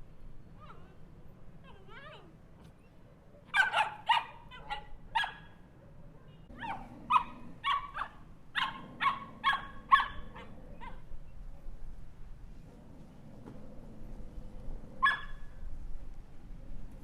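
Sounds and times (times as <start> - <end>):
small dog barking: 3.4 - 5.6, 6.5 - 11.1, 15.0 - 15.5.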